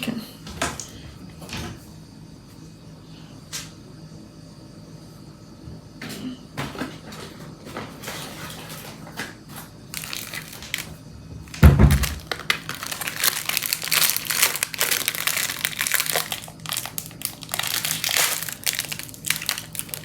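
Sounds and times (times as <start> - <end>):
paper bag crinkling and tearing: 9.9 - 20.0.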